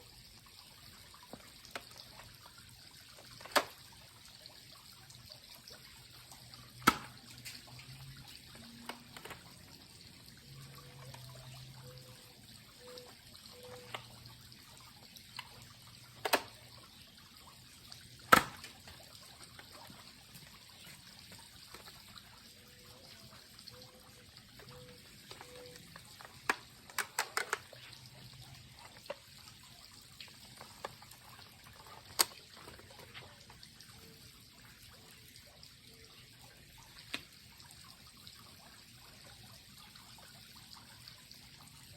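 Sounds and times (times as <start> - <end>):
plastic mechanism clicks and rattles: 1.3 - 2.3, 3.1 - 3.9, 6.8 - 7.7, 8.4 - 9.6, 15.3 - 16.8, 18.2 - 20.4, 24.6 - 29.5, 30.2 - 33.6.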